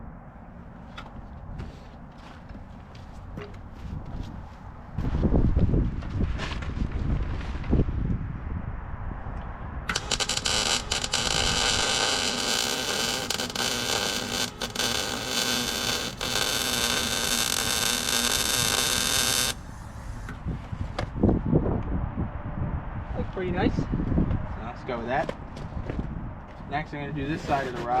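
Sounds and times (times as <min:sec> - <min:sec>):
wind noise on microphone: 0:03.3 - 0:12.4, 0:17.4 - 0:28.0
welding arc crackling: 0:09.9 - 0:19.6.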